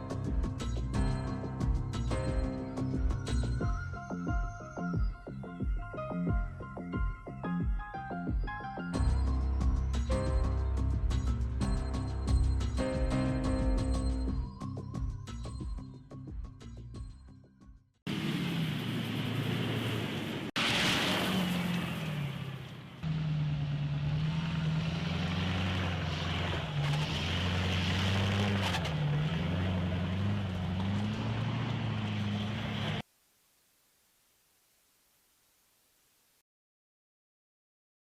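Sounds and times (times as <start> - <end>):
vehicle engine revving: 18.1 - 33.0.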